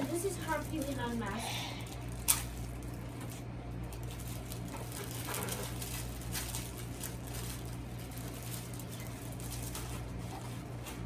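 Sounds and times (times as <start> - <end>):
toy gear rustling and tapping: 0.0 - 1.3, 4.0 - 10.5
steady low hum: 0.0 - 11.0.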